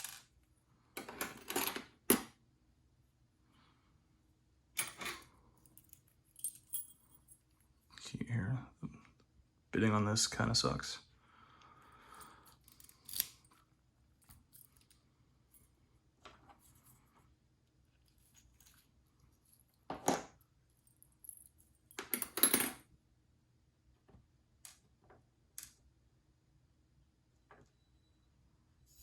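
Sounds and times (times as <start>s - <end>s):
padlock parts clicking: 12.5s - 13.6s.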